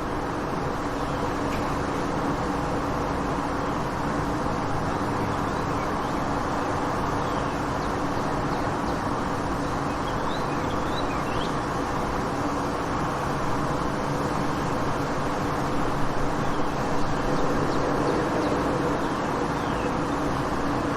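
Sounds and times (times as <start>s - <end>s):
constant low hum: 0.0s - 20.9s
traffic noise: 0.0s - 20.9s.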